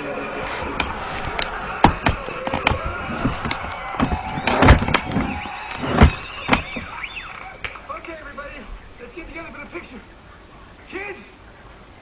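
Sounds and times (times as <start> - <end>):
sharp knocks and clicks: 0.8 - 6.9.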